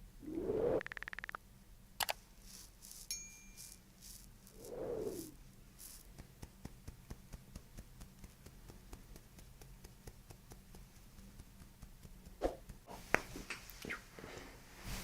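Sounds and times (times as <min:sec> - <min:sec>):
low steady hum: 0:00.0 - 0:15.0
sharp clicks: 0:00.8 - 0:01.4.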